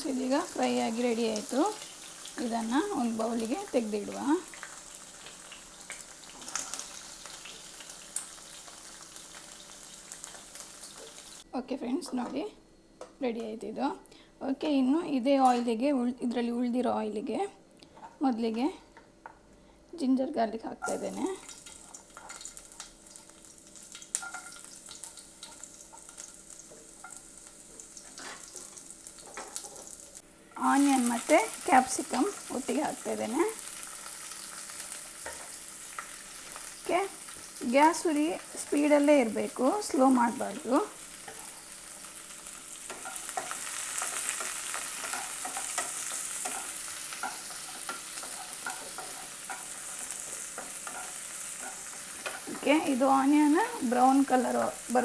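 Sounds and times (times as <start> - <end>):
ginger and garlic sizzling in oil: 0.0 - 11.5, 20.8 - 55.0
spatula scraping a pan: 27.8 - 30.0.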